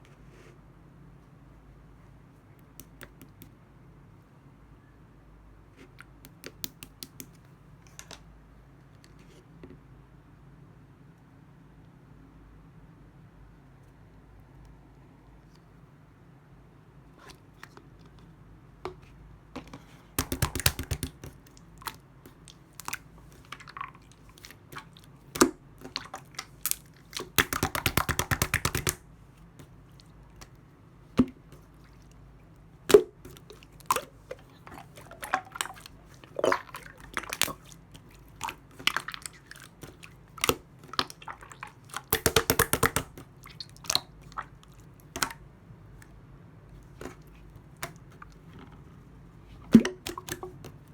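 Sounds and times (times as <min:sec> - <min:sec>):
sticky slime pops and clicks: 0:06.2 - 0:07.3, 0:20.2 - 0:21.4, 0:26.7 - 0:29.0, 0:42.0 - 0:43.3
crackling air-bubble pops: 0:27.4 - 0:29.0.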